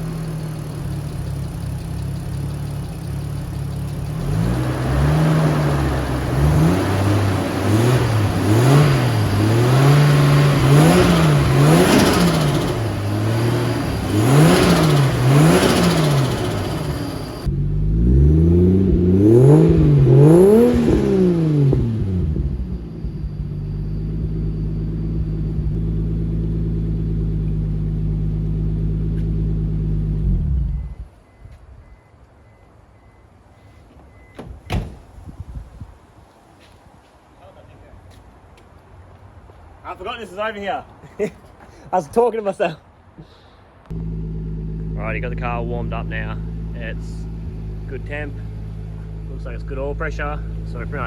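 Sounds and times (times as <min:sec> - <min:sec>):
car engine revving and idling: 0:00.0 - 0:31.1, 0:43.9 - 0:51.0.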